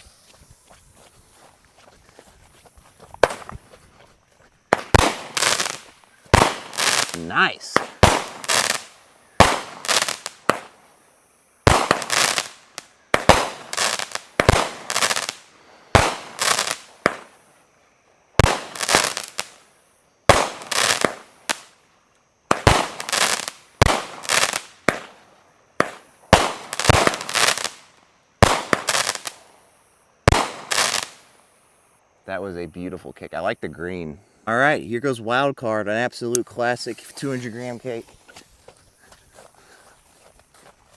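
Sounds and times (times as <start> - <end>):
firework shots launching and bursting: 4.7 - 10.8, 11.6 - 17.4, 18.4 - 19.6, 20.3 - 21.7, 22.5 - 25.2, 25.8 - 29.4, 30.3 - 31.3.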